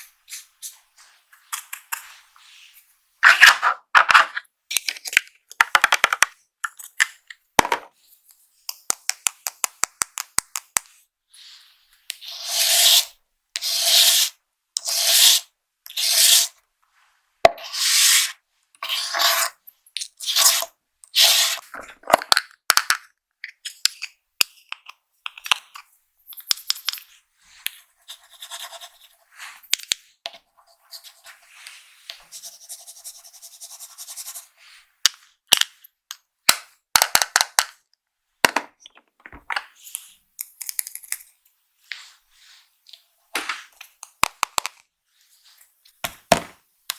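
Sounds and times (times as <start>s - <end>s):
sharp clicks and taps: 8.7s - 11.0s.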